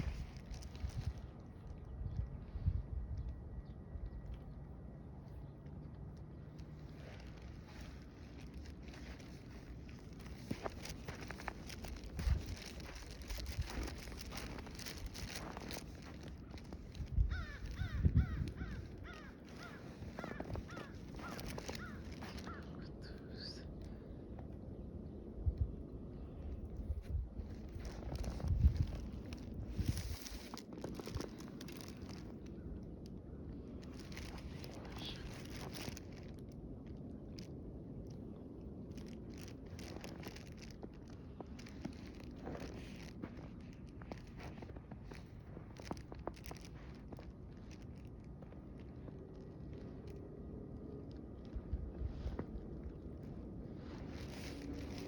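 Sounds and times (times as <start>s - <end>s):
footsteps crunching in snow: 0.0s - 1.4s, 6.6s - 22.7s, 27.0s - 32.6s, 33.8s - 36.4s, 38.9s - 50.2s, 51.9s - 55.0s
steady low rumble: 0.0s - 55.0s.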